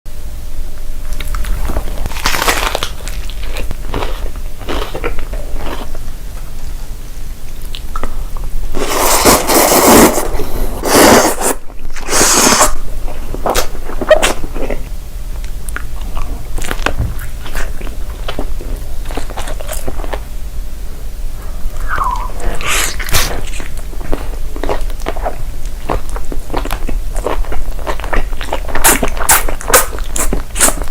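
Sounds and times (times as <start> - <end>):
food being crunched and chewed: 1.1 - 6.0, 22.1 - 30.9.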